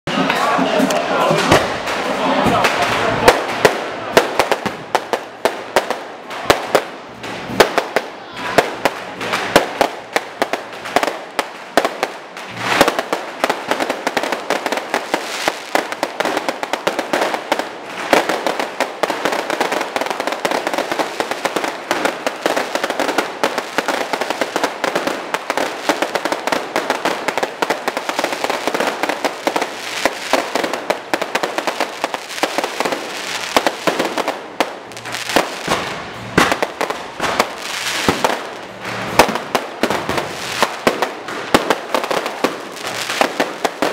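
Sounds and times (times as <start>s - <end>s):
fireworks popping and crackling: 0.1s - 43.9s
sharp firework bangs: 0.1s - 43.9s.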